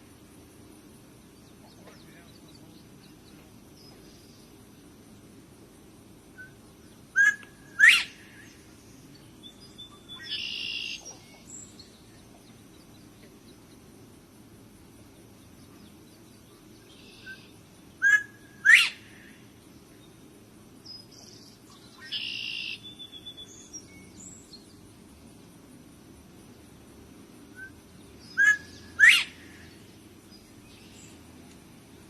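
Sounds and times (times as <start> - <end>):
partridge calling: 6.4 - 8.5, 9.6 - 11.5, 16.9 - 19.3, 21.2 - 23.5, 28.3 - 29.6.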